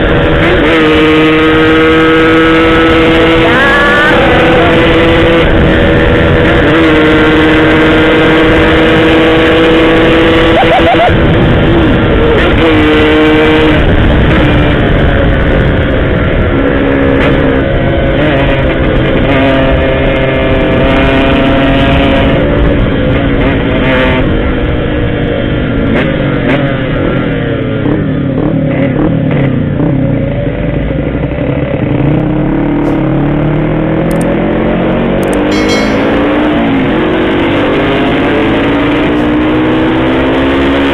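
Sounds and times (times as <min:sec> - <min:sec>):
motorcycle engine revving: 0:00.0 - 0:24.9, 0:25.8 - 0:40.9.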